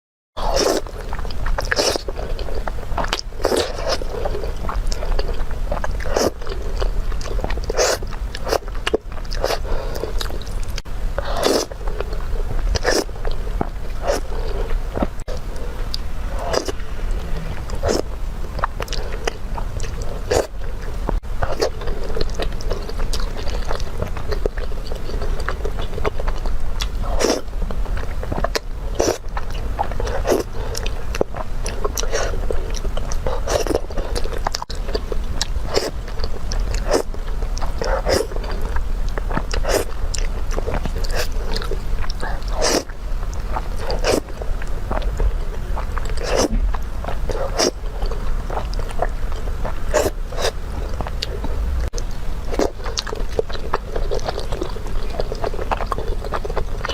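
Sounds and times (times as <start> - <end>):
person chewing and crunching: 0.4 - 56.9
steady low hum: 0.4 - 56.9
wet mouth clicks: 45.0 - 48.9.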